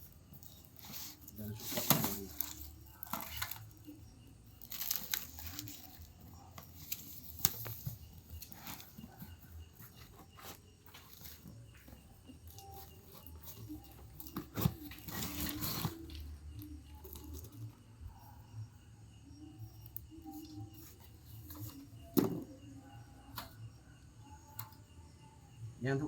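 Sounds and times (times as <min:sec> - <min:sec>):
packaging crinkling and tearing: 0:04.6 - 0:06.1.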